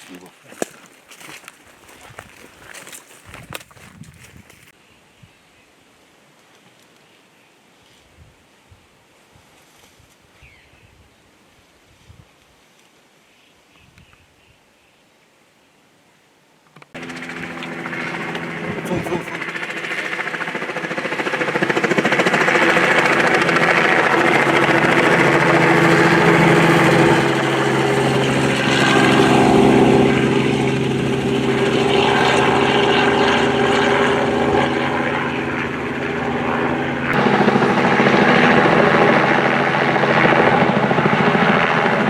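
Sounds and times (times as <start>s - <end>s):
helicopter engine and rotor drone: 17.0s - 42.0s.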